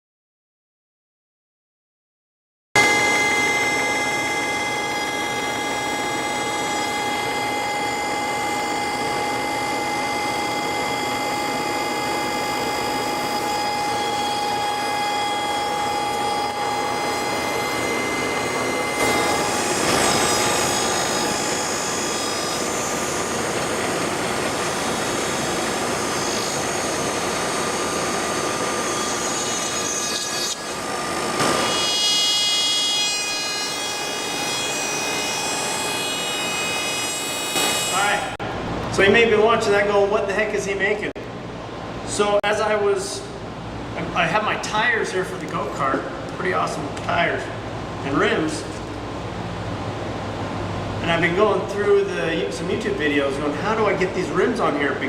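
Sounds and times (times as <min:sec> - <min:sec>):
power tool whining: 0:02.8 - 0:38.4.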